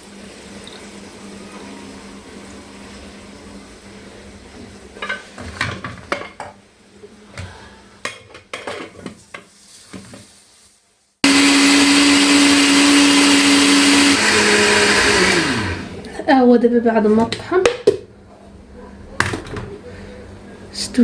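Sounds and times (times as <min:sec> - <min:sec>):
electric blender running: 0:11.2 - 0:16.1.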